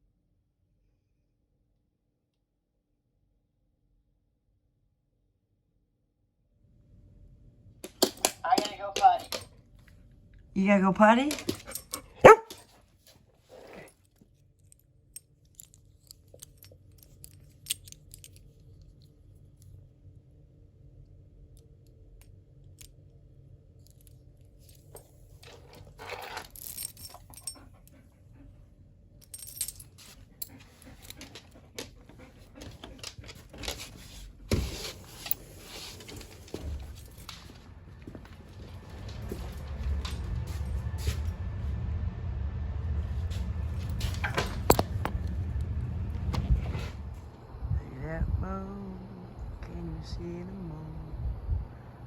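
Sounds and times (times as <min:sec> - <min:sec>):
faint steady hum: 0:26.6 - 0:52.0.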